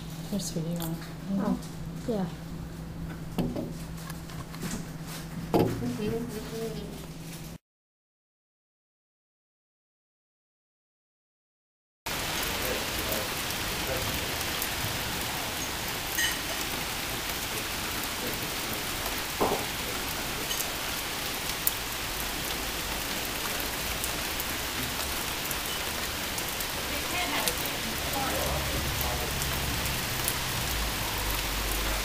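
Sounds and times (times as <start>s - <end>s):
heavy rain pouring: 12.1s - 32.0s
rain drop ticks: 12.1s - 32.0s.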